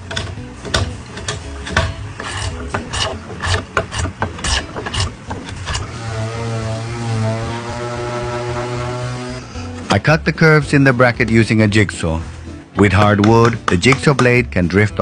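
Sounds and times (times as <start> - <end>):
hand tool scraping wood: 1.3 - 9.9.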